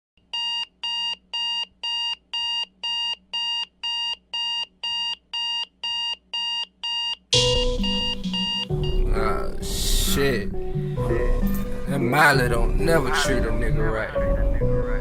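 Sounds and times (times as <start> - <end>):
alarm clock beeping: 0.4 - 9.2
music: 7.4 - 15.0.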